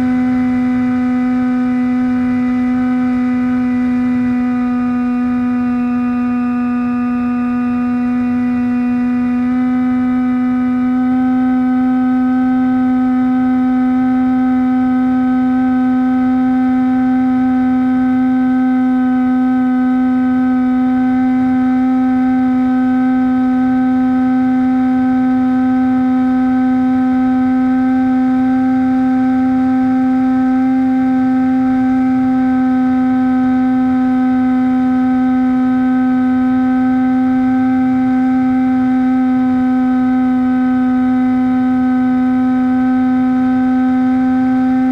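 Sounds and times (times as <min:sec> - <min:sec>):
low wind rush: 0:00.0 - 0:11.4
model plane motor drone: 0:00.0 - 0:44.9.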